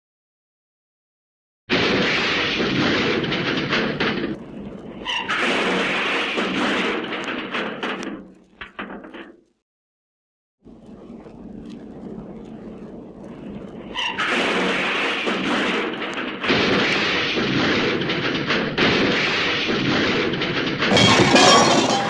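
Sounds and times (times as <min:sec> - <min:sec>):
cartoon junk crash: 0:01.7 - 0:09.4, 0:14.1 - 0:22.0.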